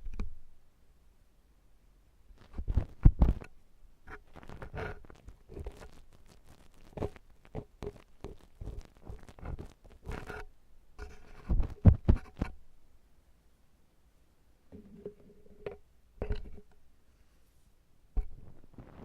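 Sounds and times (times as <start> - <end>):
scratchy crackles of ear tool: 4.1 - 10.4.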